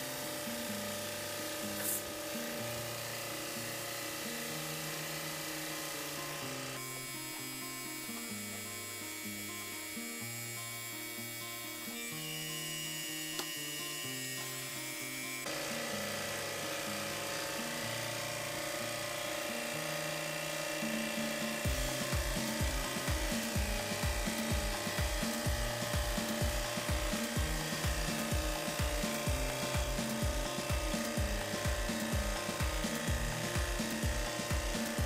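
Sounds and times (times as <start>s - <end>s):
hiss of water spray: 1.6s - 2.3s
music with stepping bass line: 21.6s - 35.0s
regular low beat: 21.7s - 35.0s.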